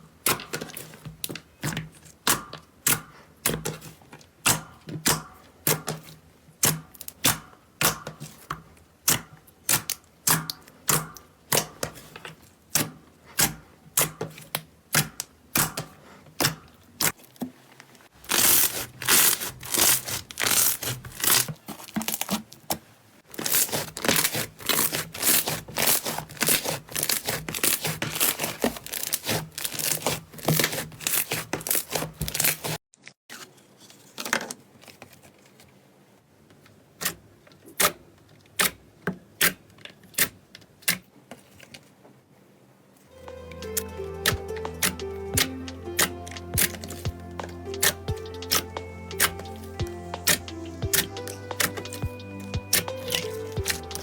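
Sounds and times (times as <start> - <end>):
slime squishing with wet pops: 0.2 - 17.4, 18.2 - 32.8.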